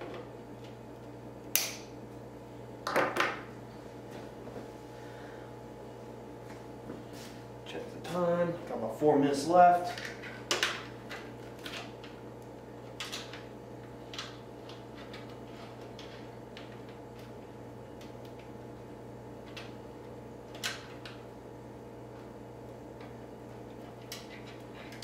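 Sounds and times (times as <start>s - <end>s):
steady electrical hum: 0.0s - 25.0s.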